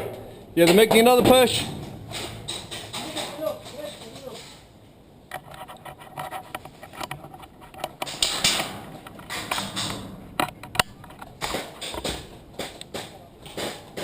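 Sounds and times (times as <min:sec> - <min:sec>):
loud crack: 0:00.0 - 0:04.6, 0:08.0 - 0:14.0.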